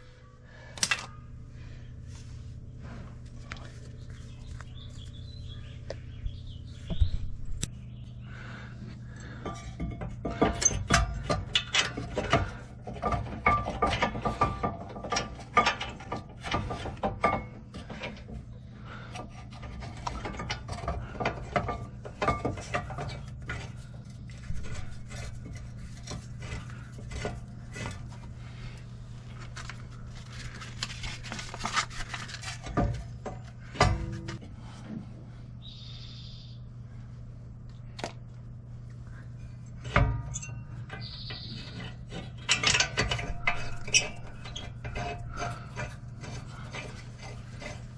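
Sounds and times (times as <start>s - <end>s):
steady low hum: 0.0s - 47.9s.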